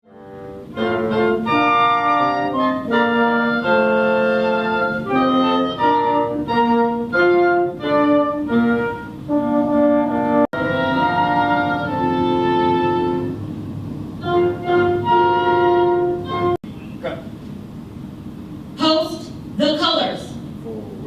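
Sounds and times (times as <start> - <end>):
wind instruments playing chords: 0.1 - 17.1.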